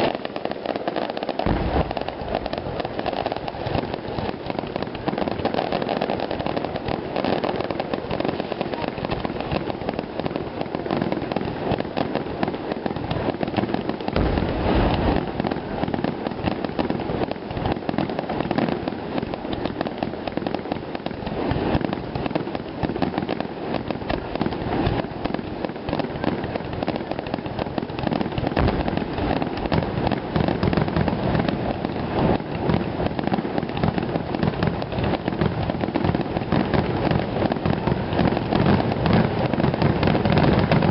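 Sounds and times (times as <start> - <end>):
fireworks bursting and crackling: 0.0 - 40.9
deep heavy boom: 1.4 - 2.3, 14.2 - 15.2.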